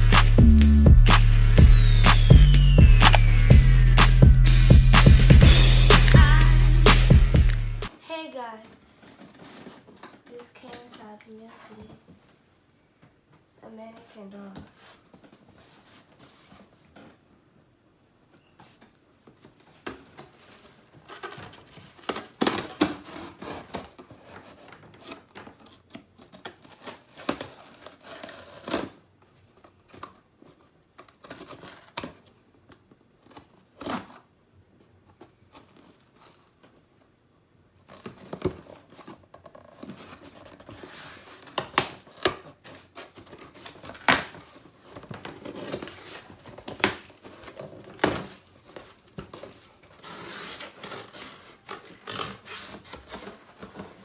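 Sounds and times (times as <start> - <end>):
packaging tearing and crinkling: 20.3 - 29.1, 31.0 - 32.4, 37.8 - 54.0.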